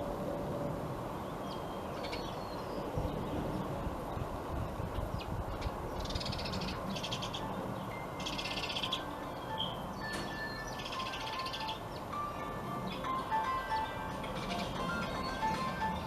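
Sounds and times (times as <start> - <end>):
harsh buzzy bird calls: 5.0 - 12.2
background music: 7.2 - 16.0.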